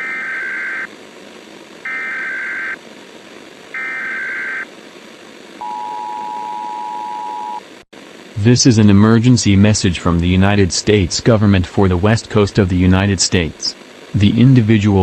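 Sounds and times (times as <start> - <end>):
constant hiss: 0.1 - 15.0
two-tone attention signal: 5.6 - 7.6.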